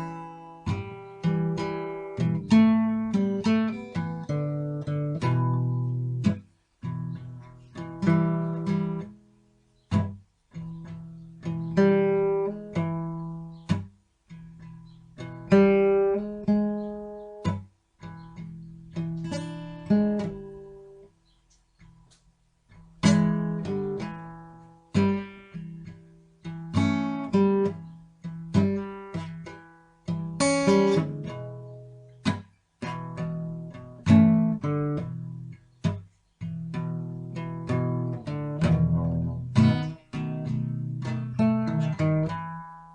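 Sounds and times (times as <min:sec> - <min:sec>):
acoustic guitar playing: 0:00.0 - 0:42.9.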